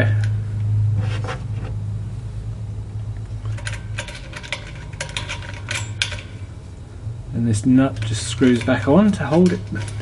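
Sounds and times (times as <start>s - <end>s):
steady low hum: 0.0s - 10.0s
metal cable clamp clicking and scraping: 3.2s - 6.6s, 7.6s - 10.0s.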